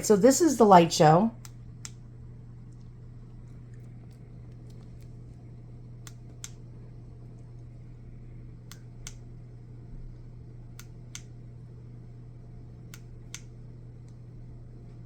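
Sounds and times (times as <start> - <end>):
steady low hum: 0.0 - 15.0
sharp light clicks: 1.4 - 2.0, 6.0 - 6.6, 8.6 - 9.3, 10.7 - 11.4, 12.9 - 14.2.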